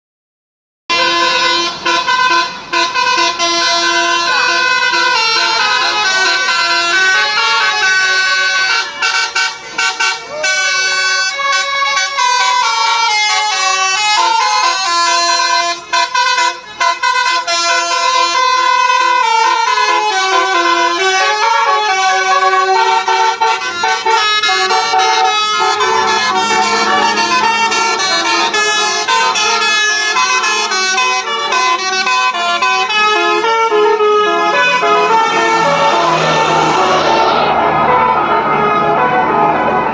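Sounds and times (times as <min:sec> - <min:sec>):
musical bus horns playing melody: 0:00.9 - 0:39.9
low drone: 0:25.6 - 0:29.3, 0:35.0 - 0:39.9.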